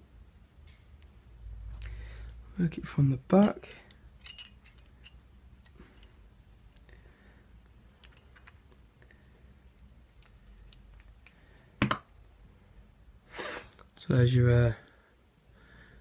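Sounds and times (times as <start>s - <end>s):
lock cylinder clicks and scrapes: 3.9s - 6.9s, 7.6s - 8.8s.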